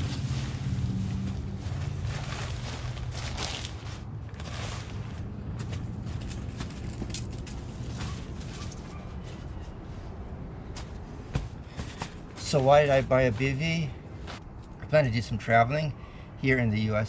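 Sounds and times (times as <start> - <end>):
nylon rustling: 0.0 - 9.5, 10.8 - 14.5
steady low rumble: 0.0 - 16.4.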